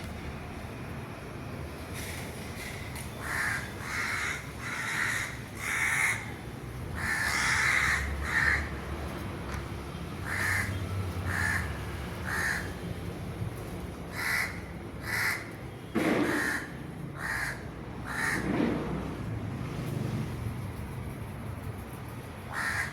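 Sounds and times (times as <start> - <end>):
crows cawing: 3.2 - 6.4, 7.0 - 8.8, 10.2 - 12.8, 14.1 - 18.5, 22.5 - 22.9.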